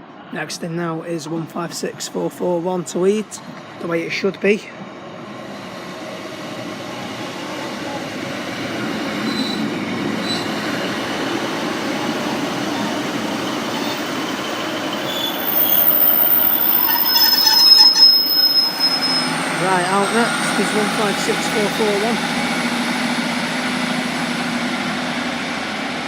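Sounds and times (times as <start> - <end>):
diesel train rumbling: 0.0 - 26.0
high-pitched brake squeals: 9.3 - 10.7, 14.9 - 20.9.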